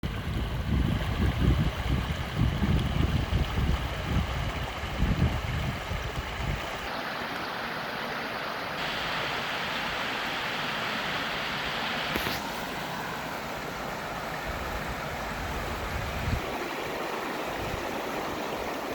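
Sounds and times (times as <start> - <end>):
wind buffeting on microphone: 0.0 - 6.9, 14.4 - 18.9
stream water rushing: 0.1 - 18.9.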